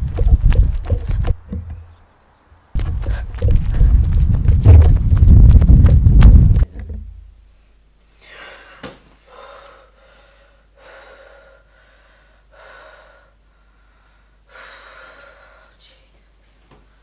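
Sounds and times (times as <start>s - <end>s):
person gasping breaths: 8.2s - 16.0s.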